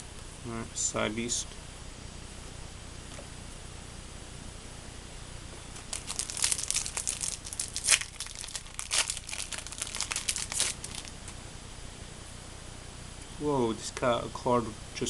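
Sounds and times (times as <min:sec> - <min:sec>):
foil wrapper tearing and crinkling: 0:05.8 - 0:11.3.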